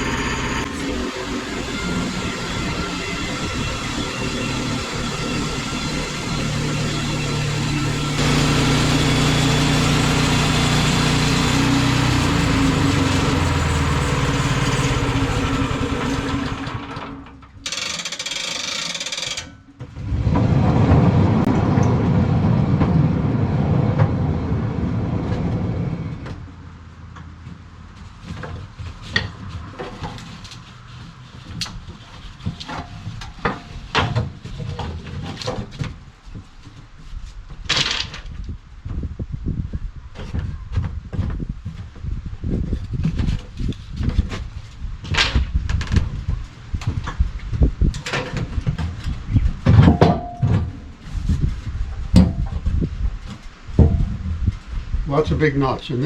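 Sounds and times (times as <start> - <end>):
bandsaw blade cutting wood: 0.0 - 19.5
sawmill engine running: 0.0 - 27.0.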